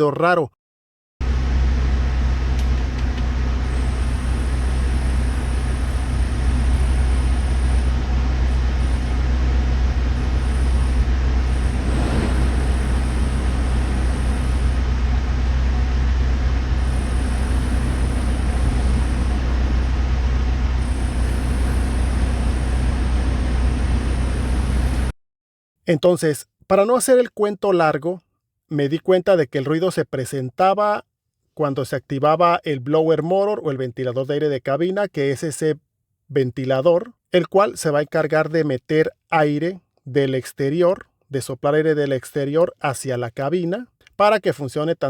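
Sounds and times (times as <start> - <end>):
blower fan low drone: 1.2 - 25.1
faint high whine: 3.6 - 25.1.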